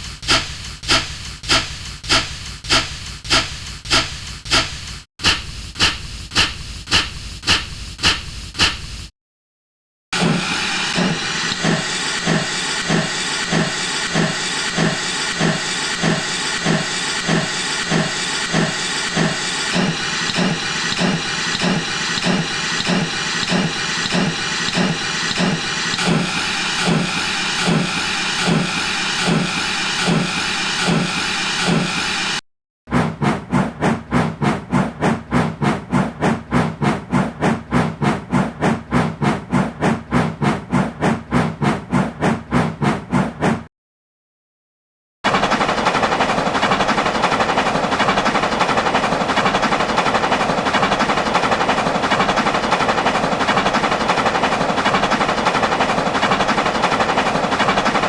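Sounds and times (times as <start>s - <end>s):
steam locomotive chuffing: 10.2s - 32.4s.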